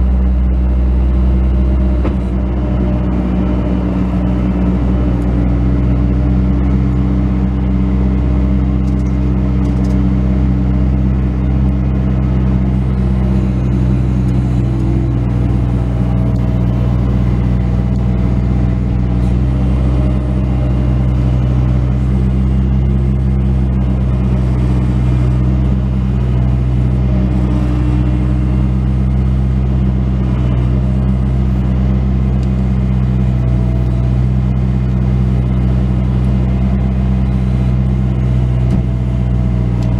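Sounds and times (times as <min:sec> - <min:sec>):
diesel engine running steadily: 0:00.0 - 0:39.9.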